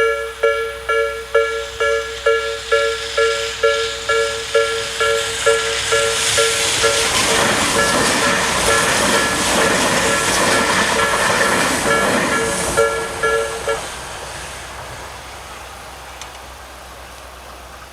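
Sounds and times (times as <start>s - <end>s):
level crossing bell dinging: 0.0s - 7.1s, 11.9s - 13.8s
train passing: 0.0s - 17.9s.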